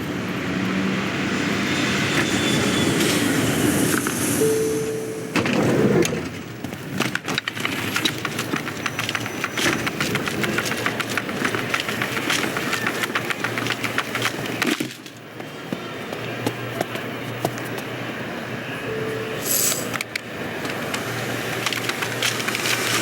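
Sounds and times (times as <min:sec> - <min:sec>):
rapid clattering knocks and cracks: 0:05.4 - 0:15.5, 0:20.6 - 0:23.0.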